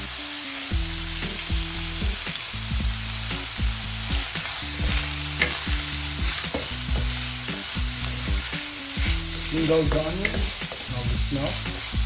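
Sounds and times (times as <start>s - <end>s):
chicken and onions sizzling: 0.0s - 12.0s
stirring scraping strokes: 4.7s - 10.9s.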